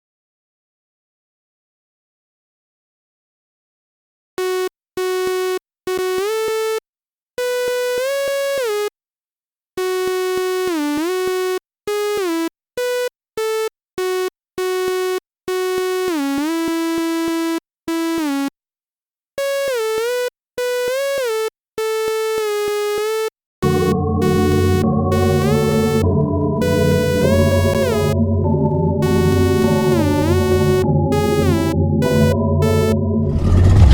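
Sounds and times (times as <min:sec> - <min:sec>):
buzzy synthesizer melody: 0:23.6 - 0:33.9
fuller dense music: 0:23.6 - 0:33.9.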